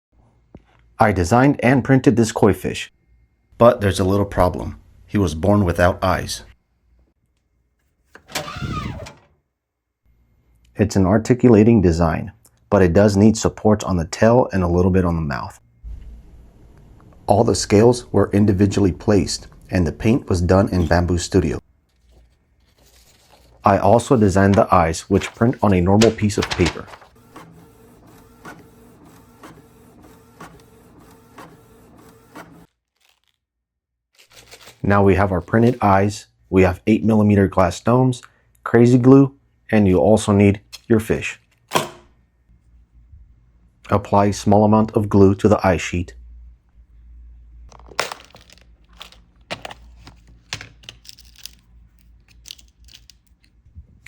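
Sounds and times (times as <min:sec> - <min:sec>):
paper printer printing: 0:08.2 - 0:09.3, 0:23.1 - 0:32.7
paper crinkling: 0:21.9 - 0:27.4, 0:32.7 - 0:33.4, 0:34.2 - 0:36.0, 0:47.7 - 0:53.6
print head clicking: 0:23.6 - 0:32.7.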